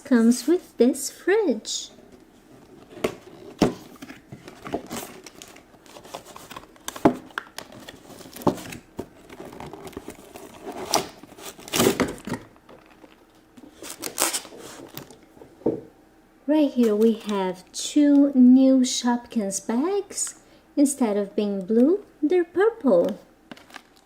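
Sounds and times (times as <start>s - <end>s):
packaging crinkling and rustling: 2.1s - 15.4s, 23.5s - 24.0s.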